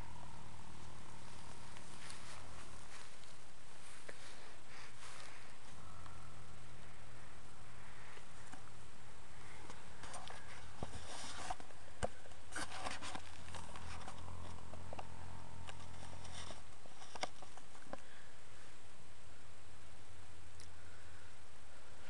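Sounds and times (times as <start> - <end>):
crackles and clicks in hay: 0.0 - 6.2.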